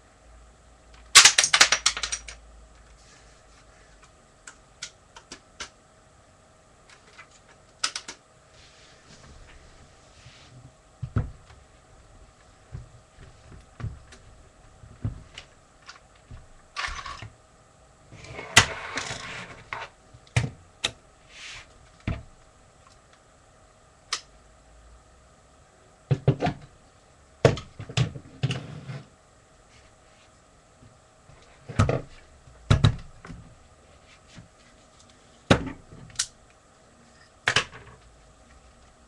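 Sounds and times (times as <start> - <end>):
plastic pieces clicking and rattling: 1.1 - 2.4, 16.8 - 17.2.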